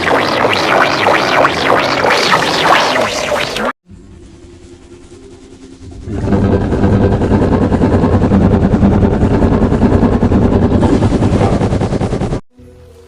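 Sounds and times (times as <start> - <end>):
loud harsh rattling noise: 4.0 - 12.4.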